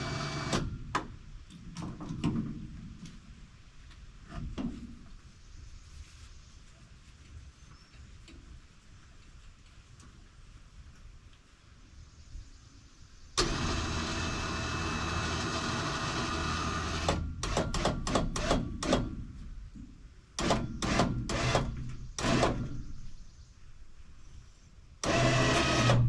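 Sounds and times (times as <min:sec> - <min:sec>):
winch running under load: 0:13.4 - 0:17.2, 0:25.0 - 0:26.0.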